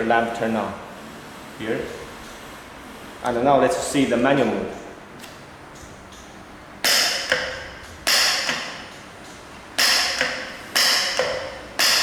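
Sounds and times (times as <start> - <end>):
solenoid valve clicking: 5.2 - 12.0.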